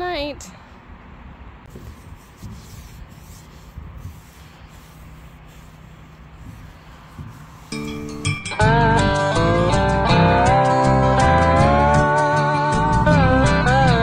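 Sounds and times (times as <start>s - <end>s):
rag wiping and scrubbing: 1.7s - 8.4s.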